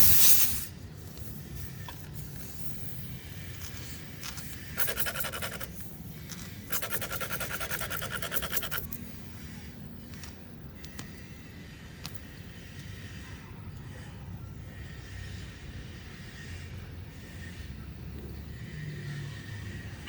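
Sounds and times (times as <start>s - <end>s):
rasp tool scraping in tire: 3.5s - 9.0s.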